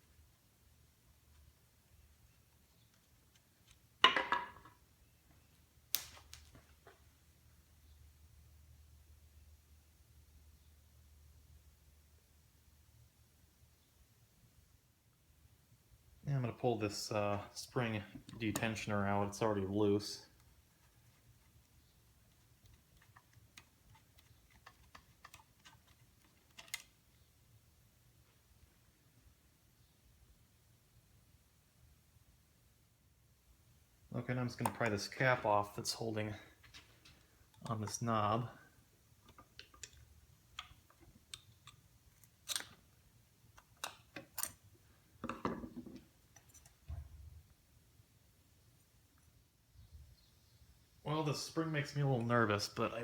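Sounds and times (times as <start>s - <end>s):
small metal parts clicking: 39.3s - 42.8s.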